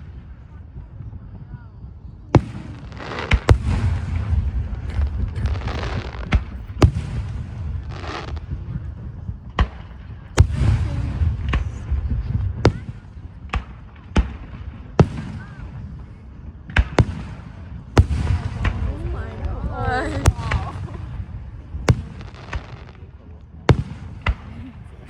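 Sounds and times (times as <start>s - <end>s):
fireworks crackling hiss: 2.4s - 9.0s, 17.1s - 23.2s
firework bangs: 2.4s - 25.0s
low rumble: 3.4s - 13.1s.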